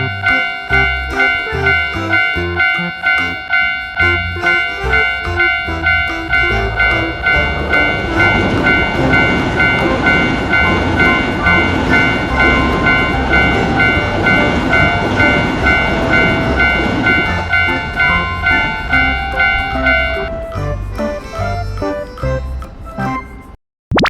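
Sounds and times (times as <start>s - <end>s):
train wheels clattering: 0.0s - 20.4s
level crossing alarm bell: 0.0s - 20.8s
train rumbling: 0.0s - 23.2s.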